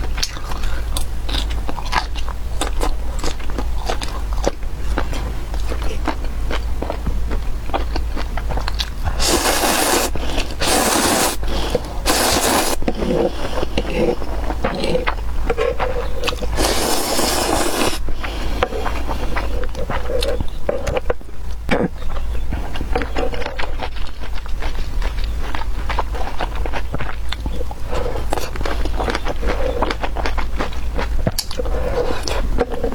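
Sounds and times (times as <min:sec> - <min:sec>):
wet chewing sounds: 0:00.0 - 0:32.9
noodle slurping: 0:09.0 - 0:15.1, 0:16.1 - 0:19.6.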